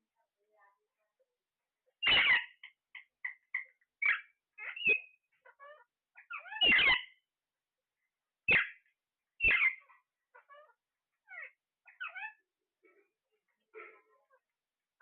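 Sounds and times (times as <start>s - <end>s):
parrots chattering chirps: 2.0s - 7.2s, 8.5s - 12.5s
parrots squawking harshly: 2.0s - 7.2s, 8.5s - 8.8s, 9.4s - 12.4s.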